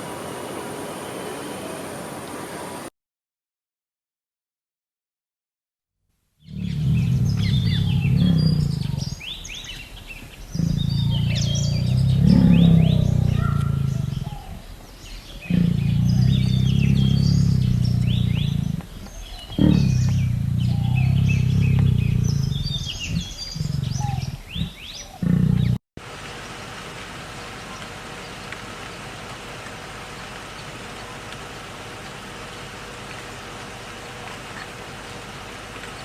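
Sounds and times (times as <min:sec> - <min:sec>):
animal low rumbling growls: 0:06.4 - 0:25.8
small birds chirping: 0:06.4 - 0:25.8, 0:27.2 - 0:36.0.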